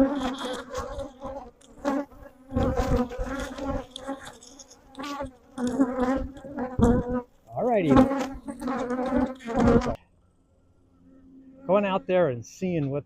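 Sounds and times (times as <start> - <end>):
honeybees buzzing: 0.0 - 10.1.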